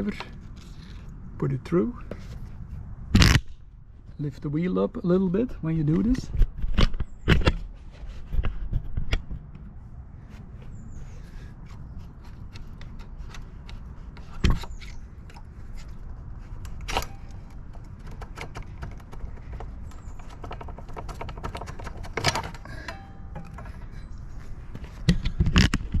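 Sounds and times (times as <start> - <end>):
metal clicks and scraping: 11.6 - 24.1.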